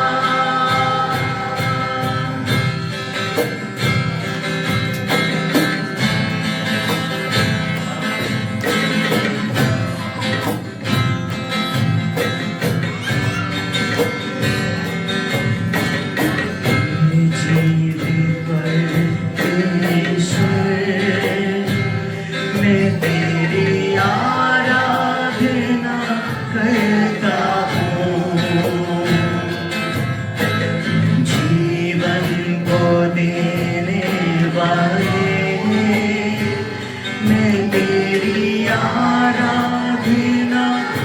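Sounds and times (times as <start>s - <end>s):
guitar: 0.0s - 41.0s
percussion hits: 0.0s - 41.0s.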